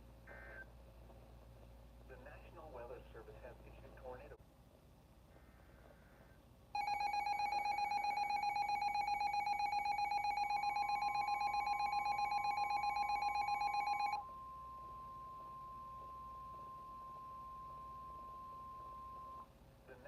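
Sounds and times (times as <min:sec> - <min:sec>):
fluttering two-tone alarm: 0:06.8 - 0:19.5
high steady alarm tone: 0:06.8 - 0:19.5.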